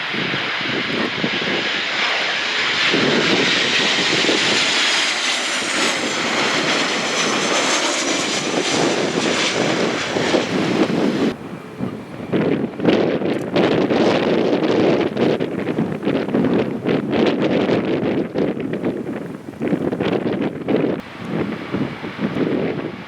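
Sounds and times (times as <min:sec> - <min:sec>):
airliner engines roaring: 0:00.0 - 0:23.0
wind buffeting microphone: 0:00.0 - 0:23.0.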